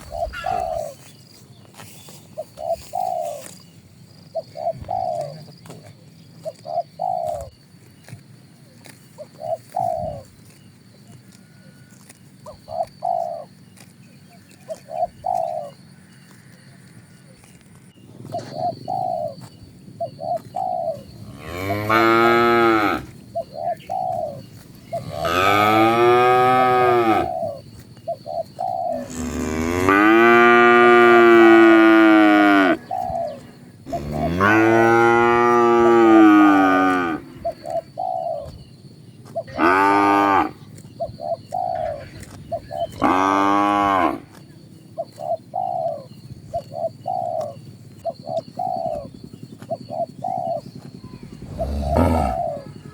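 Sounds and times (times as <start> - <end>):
cattle mooing: 21.2 - 23.1, 24.8 - 27.4, 28.9 - 33.0, 33.8 - 37.6, 39.5 - 40.6, 43.0 - 44.3, 51.2 - 52.9.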